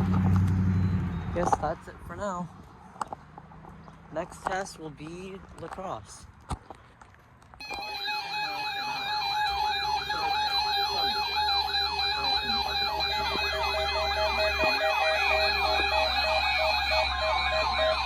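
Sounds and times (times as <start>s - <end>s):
electronic warbling siren alarm: 7.6s - 18.0s.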